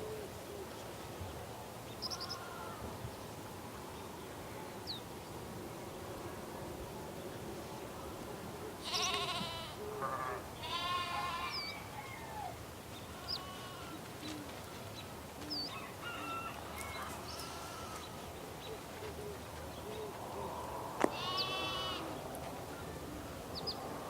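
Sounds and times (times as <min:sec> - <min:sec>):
steady background hiss: 0:00.0 - 0:24.0
sheep bleating: 0:08.8 - 0:11.7, 0:13.2 - 0:14.0, 0:17.3 - 0:18.1, 0:21.1 - 0:22.1.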